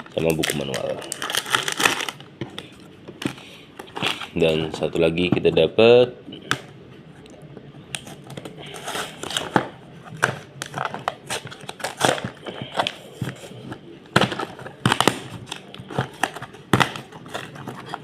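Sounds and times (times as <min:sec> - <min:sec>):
packaging crinkling and rustling: 0:00.0 - 0:04.6, 0:08.0 - 0:18.0
packaging clicks and snaps: 0:08.0 - 0:13.4, 0:14.1 - 0:18.0.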